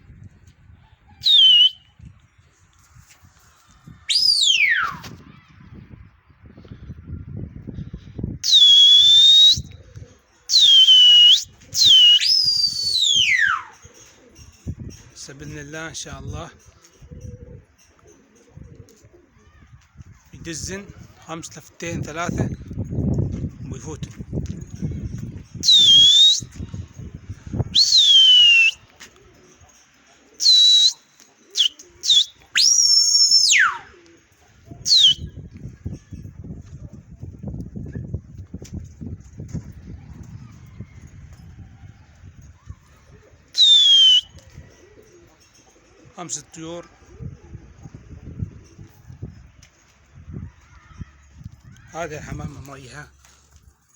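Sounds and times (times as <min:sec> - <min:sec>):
loud high human whistles: 0:01.2 - 0:01.8, 0:04.1 - 0:05.0, 0:08.4 - 0:09.8, 0:10.5 - 0:13.7, 0:25.6 - 0:26.6, 0:27.7 - 0:28.8, 0:30.4 - 0:31.0, 0:31.6 - 0:33.9, 0:34.9 - 0:35.4, 0:43.6 - 0:44.4.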